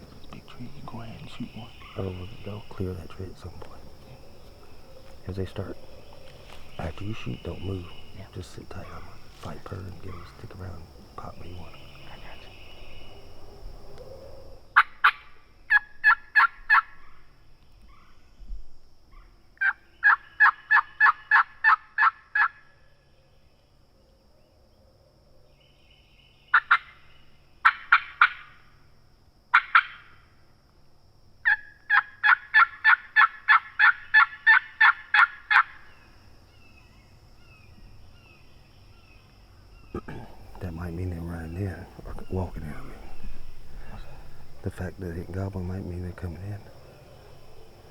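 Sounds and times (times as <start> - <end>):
turkey calling: 0.0 - 17.2, 19.2 - 22.6, 26.5 - 27.0, 27.6 - 28.6, 29.5 - 30.2, 31.4 - 35.9, 39.9 - 47.9.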